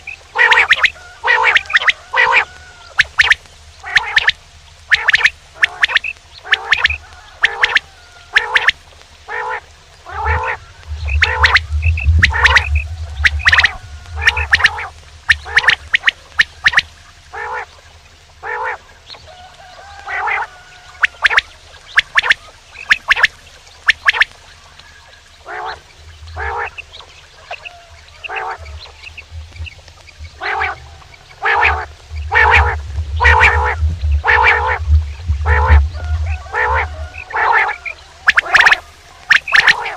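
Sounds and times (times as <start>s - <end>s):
quail calling: 0.0s - 39.9s
low rumble: 9.7s - 19.1s, 21.6s - 39.9s.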